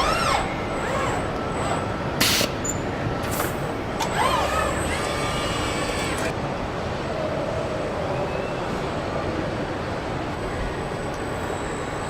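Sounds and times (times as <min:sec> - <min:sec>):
electric motors whining: 0:00.0 - 0:02.3, 0:03.3 - 0:06.3
factory hum: 0:00.0 - 0:12.0.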